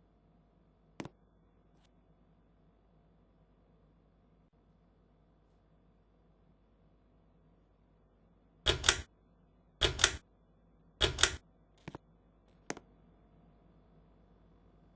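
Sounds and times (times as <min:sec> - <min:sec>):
fan pull-chain switch clicking: 0:08.7 - 0:09.1, 0:09.8 - 0:10.2, 0:11.0 - 0:11.4.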